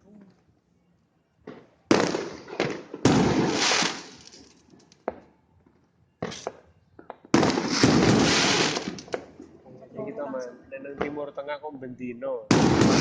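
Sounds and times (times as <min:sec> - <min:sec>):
fireworks bangs: 0:01.5 - 0:05.3, 0:06.2 - 0:09.6, 0:12.5 - 0:13.0
fireworks crackle: 0:01.9 - 0:05.2, 0:06.2 - 0:09.6, 0:12.5 - 0:13.0.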